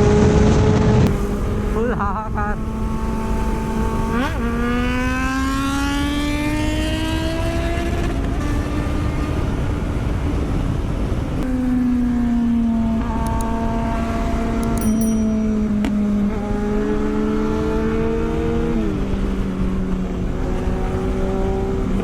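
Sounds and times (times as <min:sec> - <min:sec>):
motorcycle engine accelerating: 0:00.0 - 0:22.0
wind rush on microphone: 0:05.3 - 0:14.8, 0:15.6 - 0:22.0.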